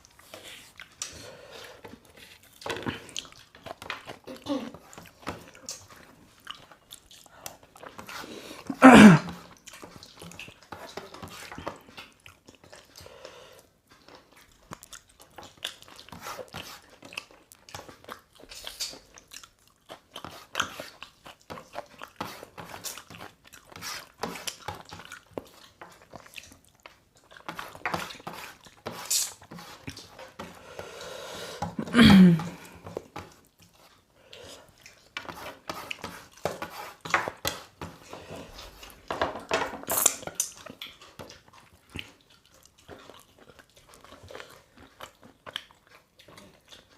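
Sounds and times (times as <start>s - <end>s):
people chewing and crunching: 0.0s - 46.9s.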